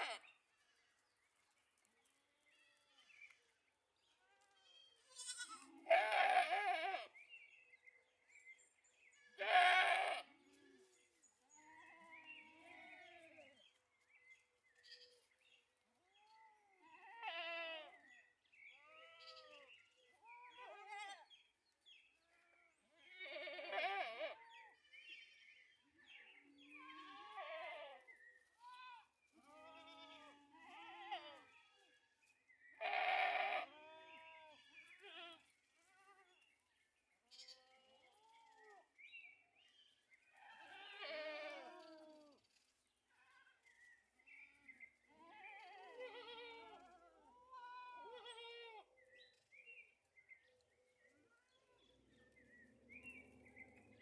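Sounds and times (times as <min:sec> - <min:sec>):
goats bleating: 0:05.1 - 0:07.1, 0:09.4 - 0:10.3, 0:20.5 - 0:21.2, 0:23.1 - 0:24.4, 0:32.8 - 0:35.4, 0:40.4 - 0:41.8, 0:45.2 - 0:48.8.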